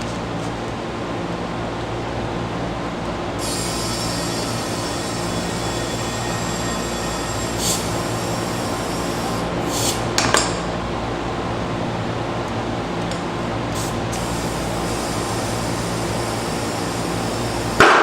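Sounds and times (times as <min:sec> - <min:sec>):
air compressor running: 0:00.0 - 0:18.0
high thin squeal: 0:03.4 - 0:10.2, 0:13.8 - 0:18.0.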